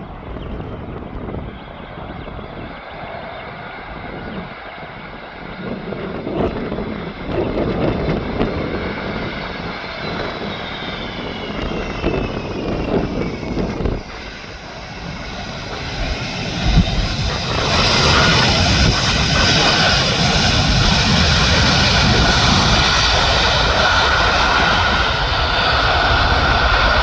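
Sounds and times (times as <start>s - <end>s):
jet engine roar: 0.0s - 27.0s
jet engine whine: 0.0s - 27.0s.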